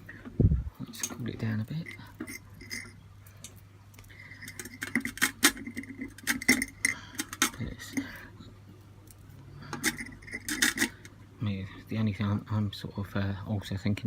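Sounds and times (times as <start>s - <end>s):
steady low hum: 0.0s - 14.0s
small parts clicking and tapping: 0.9s - 8.2s, 9.0s - 11.2s.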